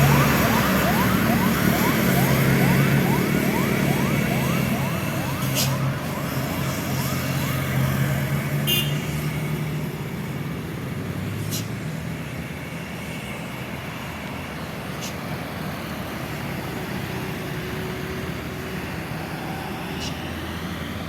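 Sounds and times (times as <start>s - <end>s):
heavy vehicle engine drone: 0.0s - 21.0s
road traffic noise: 0.0s - 21.0s.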